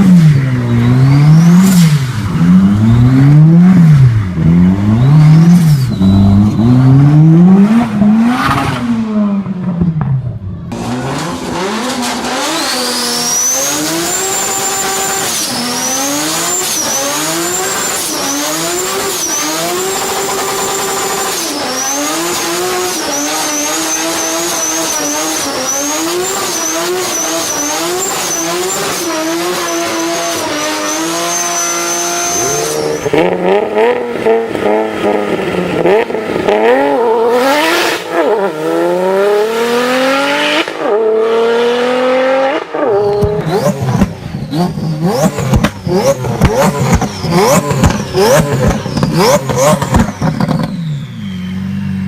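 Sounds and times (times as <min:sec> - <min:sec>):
car engine revving: 0:00.0 - 0:52.0.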